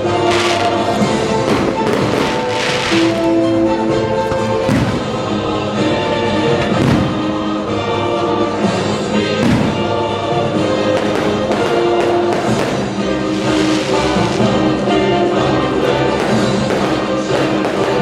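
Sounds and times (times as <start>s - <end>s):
fireworks bursting: 0.0s - 18.0s
orchestral music with choir: 0.0s - 18.0s.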